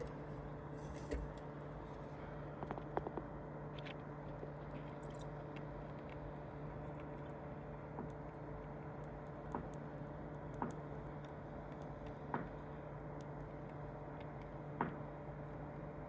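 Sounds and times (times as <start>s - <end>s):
low electrical hum: 0.0s - 16.0s
small ticks and crackles: 0.0s - 16.0s.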